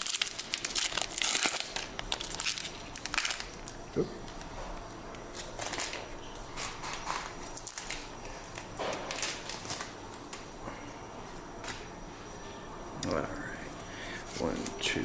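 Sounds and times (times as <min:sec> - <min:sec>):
foil wrapper crinkling: 0:00.0 - 0:04.5, 0:05.3 - 0:10.4.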